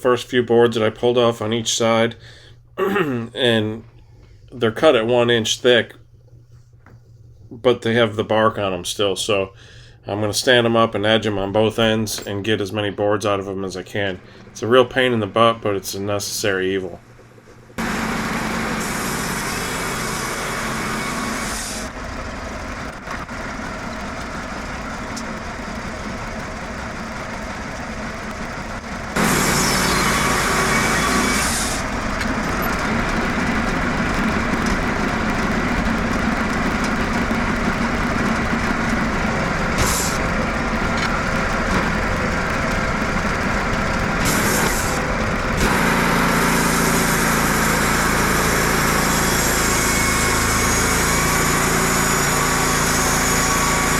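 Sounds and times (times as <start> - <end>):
band sawmill cutting wood: 14.0 - 53.9.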